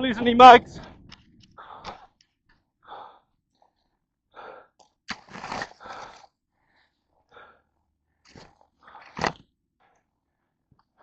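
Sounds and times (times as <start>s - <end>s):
person breathing hard: 1.5s - 2.2s, 2.8s - 3.4s, 4.3s - 4.8s, 5.7s - 8.2s.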